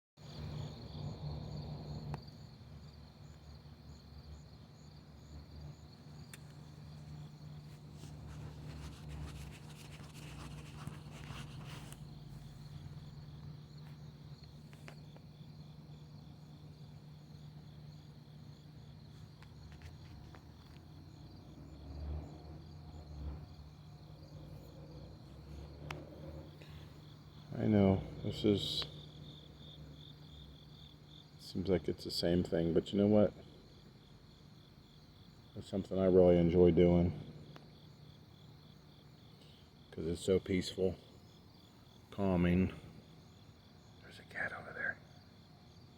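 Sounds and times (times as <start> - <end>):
crickets chirping: 0.2 - 45.9
brief rustling: 6.3 - 12.9.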